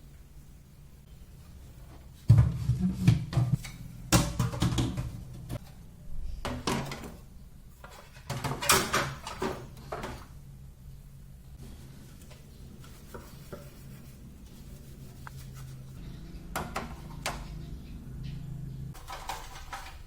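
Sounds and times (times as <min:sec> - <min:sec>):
steady low hum: 0:00.0 - 0:06.5
objects clattering and knocking: 0:02.2 - 0:05.8, 0:06.4 - 0:07.2, 0:07.8 - 0:10.3, 0:19.0 - 0:20.0.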